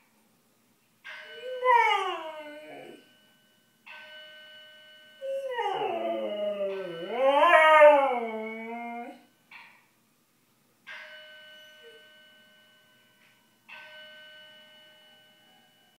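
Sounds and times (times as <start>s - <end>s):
ringing electronic chimes: 1.2s - 9.1s
dog howling: 1.4s - 3.0s, 5.2s - 9.2s.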